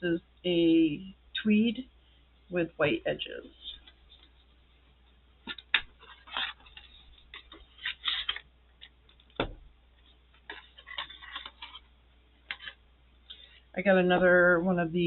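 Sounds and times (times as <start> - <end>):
notebook rustling: 3.7 - 4.6, 5.4 - 12.8
notebook thump: 9.4 - 9.7.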